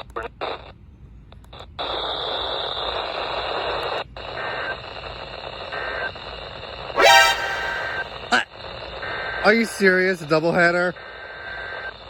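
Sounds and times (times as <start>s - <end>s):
faint brief tones: 7.0s - 8.0s.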